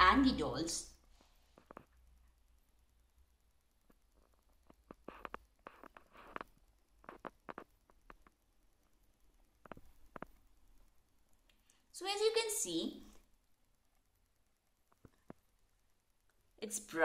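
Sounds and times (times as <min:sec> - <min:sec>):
faint clicks and taps: 0:01.1 - 0:02.4, 0:03.8 - 0:11.8, 0:14.8 - 0:15.6.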